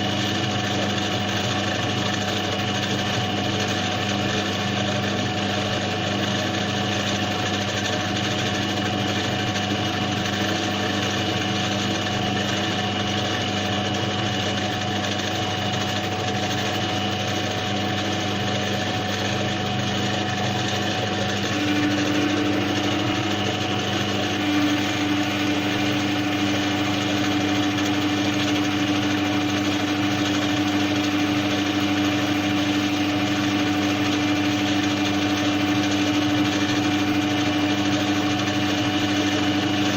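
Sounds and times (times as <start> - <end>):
power tool motor running: 0.0 - 39.9.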